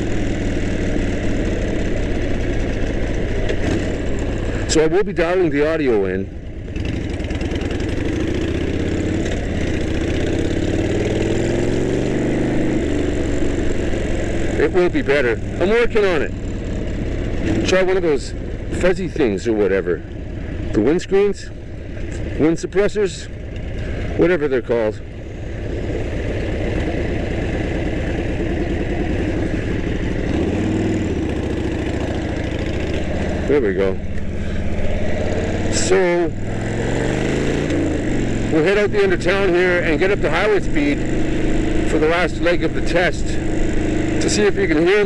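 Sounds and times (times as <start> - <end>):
motorcycle engine running: 0.0 - 45.0.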